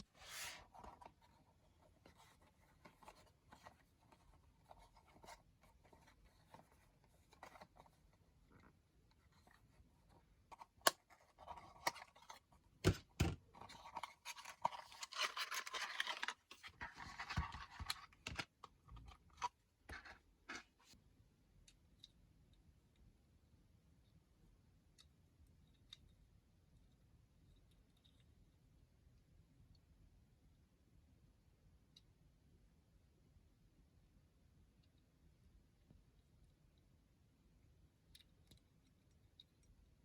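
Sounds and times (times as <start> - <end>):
packaging clicks and taps: 10.5 - 20.6
crinkly packaging rustling: 10.5 - 20.9.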